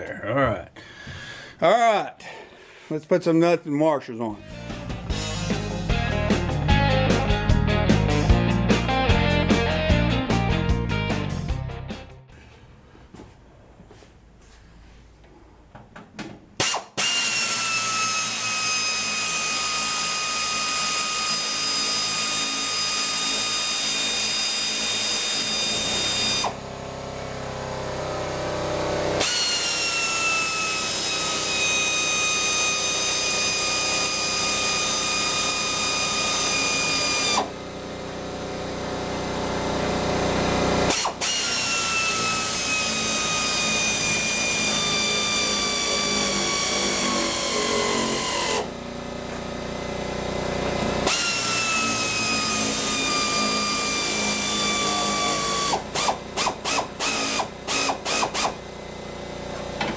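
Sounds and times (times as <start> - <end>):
power tool whining: 16.6 - 59.9.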